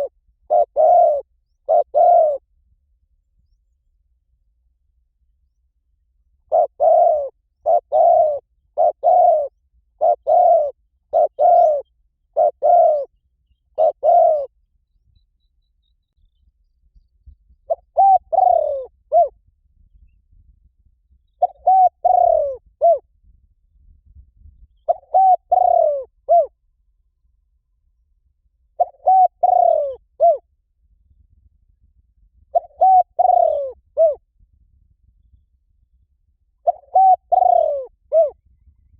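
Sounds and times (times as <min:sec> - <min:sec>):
dove cooing: 0:00.0 - 0:02.5, 0:06.4 - 0:13.1, 0:13.7 - 0:14.6, 0:17.6 - 0:19.3, 0:21.4 - 0:23.0, 0:24.8 - 0:26.6, 0:28.8 - 0:30.5, 0:32.5 - 0:34.2, 0:36.6 - 0:38.4.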